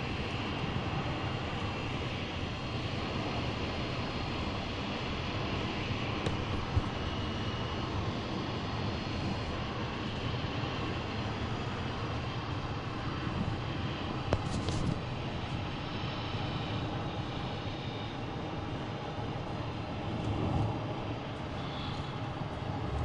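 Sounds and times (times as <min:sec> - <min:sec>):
car engine drone: 0:18.7 - 0:23.0.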